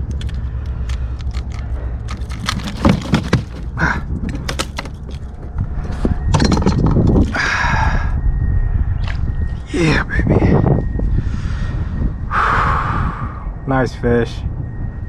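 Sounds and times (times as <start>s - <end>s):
low rumble: 0.0s - 15.0s
fishing gear rattling: 0.1s - 5.6s.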